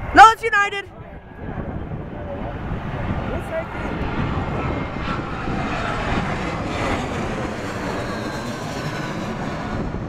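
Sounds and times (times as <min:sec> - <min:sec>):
faint jet whine: 0:00.0 - 0:10.0
jet airliner engine rumble: 0:00.0 - 0:10.0.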